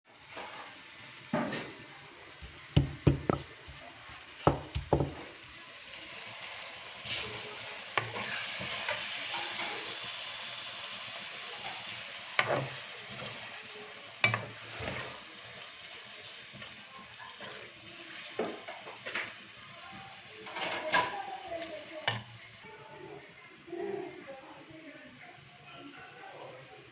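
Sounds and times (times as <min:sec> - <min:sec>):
liver sizzling in hot oil: 0:00.1 - 0:22.7
spoon knocking and scraping pan: 0:01.2 - 0:05.4, 0:11.6 - 0:13.5, 0:14.2 - 0:15.2, 0:17.4 - 0:19.4.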